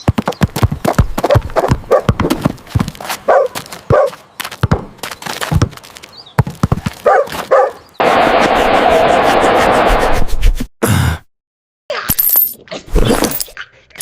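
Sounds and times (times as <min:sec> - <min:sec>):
dog barking: 0:01.3 - 0:02.1, 0:03.3 - 0:04.2, 0:07.0 - 0:07.8
loud steady noise: 0:08.0 - 0:10.2.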